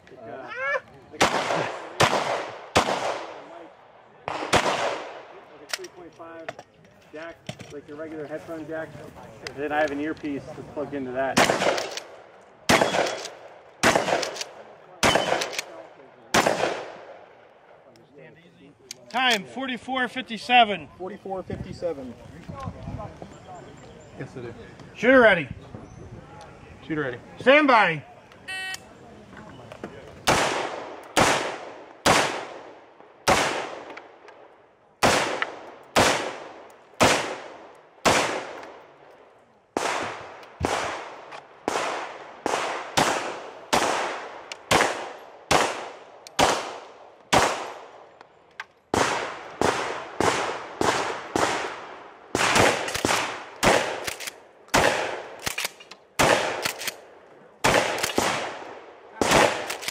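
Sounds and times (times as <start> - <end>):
gunshots ringing: 1.2 - 3.5, 4.2 - 5.4, 11.3 - 12.1, 12.7 - 17.1, 30.2 - 34.0, 35.0 - 38.8, 39.8 - 47.9, 48.9 - 57.0, 57.6 - 59.9.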